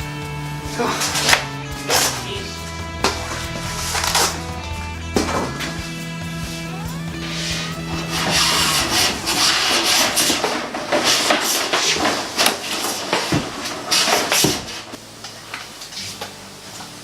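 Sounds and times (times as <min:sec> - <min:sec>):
scraping and rasping on wood: 0:03.0 - 0:04.5, 0:07.2 - 0:15.0.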